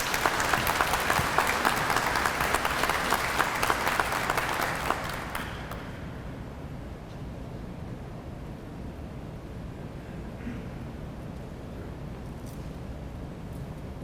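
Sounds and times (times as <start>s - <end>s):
audience applauding: 0.0s - 6.1s.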